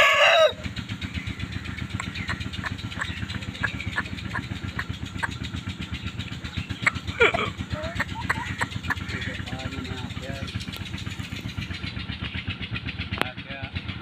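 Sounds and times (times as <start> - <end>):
rooster crowing: 0.0 - 0.7
engine idling: 0.0 - 14.0.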